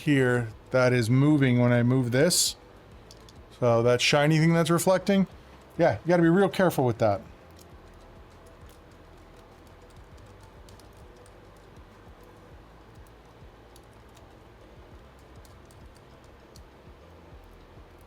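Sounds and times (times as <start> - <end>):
small parts clicking and tapping: 2.9 - 3.6, 7.4 - 18.0.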